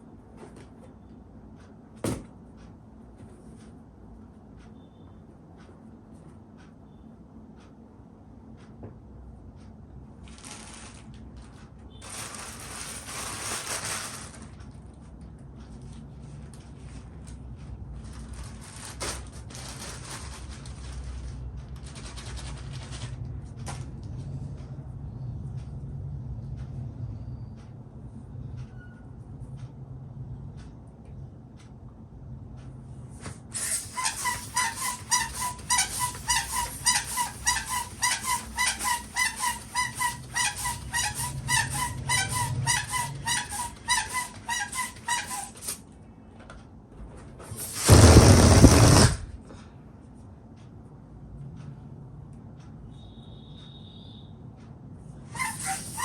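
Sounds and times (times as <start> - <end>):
air hissing into balloon: 33.5 - 45.8, 47.5 - 49.4, 55.4 - 56.0
balloon snapping: 47.6 - 49.3.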